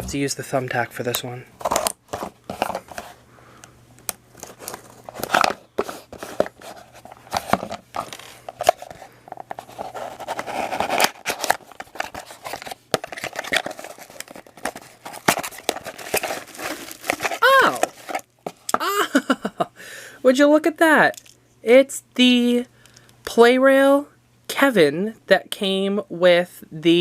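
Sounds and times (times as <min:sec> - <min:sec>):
package being opened by hand: 0:04.3 - 0:18.9
wrapping crinkling: 0:04.4 - 0:18.8
tape tearing: 0:09.7 - 0:18.8.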